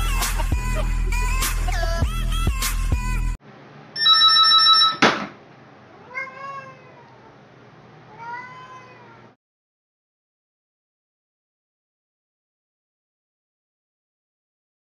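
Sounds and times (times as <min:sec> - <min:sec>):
electronic ringing tone: 0:04.0 - 0:05.0
cat meowing: 0:05.9 - 0:07.4, 0:08.1 - 0:09.4.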